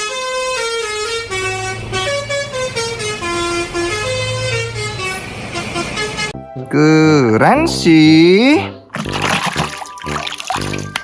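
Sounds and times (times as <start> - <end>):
electronic horn-like melody: 0.0 - 11.0.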